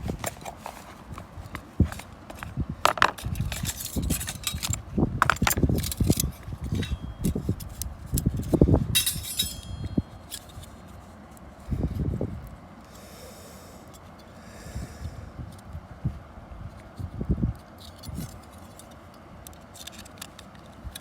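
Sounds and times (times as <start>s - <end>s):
gear knocks and thuds: 0.0s - 7.5s
light metallic clinks: 9.0s - 10.6s.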